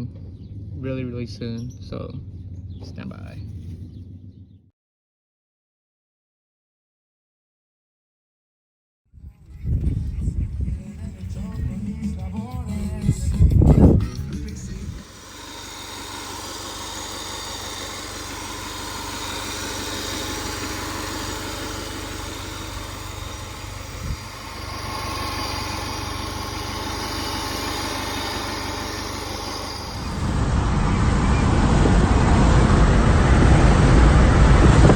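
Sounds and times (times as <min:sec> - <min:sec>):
car engine running: 0:02.2 - 0:04.6, 0:09.7 - 0:33.0
loud rushing noise: 0:14.8 - 0:34.9.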